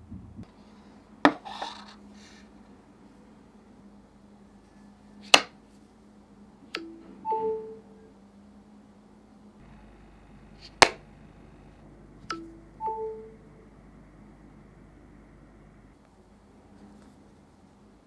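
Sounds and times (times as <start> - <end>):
electronic chime: 9.7 - 13.5
sharp click: 10.6 - 12.4.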